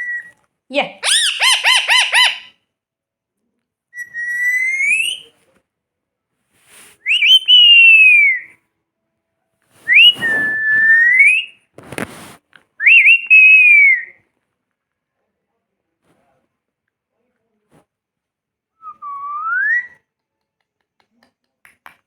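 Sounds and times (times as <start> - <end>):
parrot whistling: 1.0 - 2.5, 4.0 - 5.3, 7.0 - 8.5, 9.9 - 11.6, 12.8 - 14.2, 18.8 - 20.0
noisy rustle: 9.7 - 12.5.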